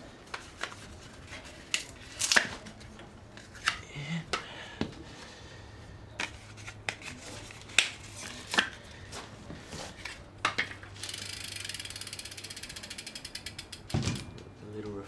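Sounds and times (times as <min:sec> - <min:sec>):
bike hub ratchet clicking: 0:10.6 - 0:14.0.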